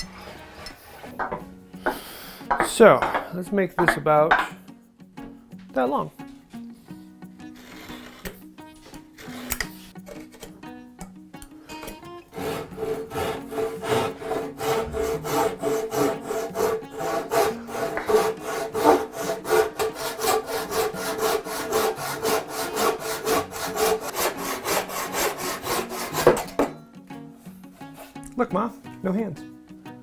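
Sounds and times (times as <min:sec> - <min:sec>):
hand saw cutting wood: 0:00.0 - 0:04.5, 0:07.5 - 0:10.5, 0:11.7 - 0:26.8.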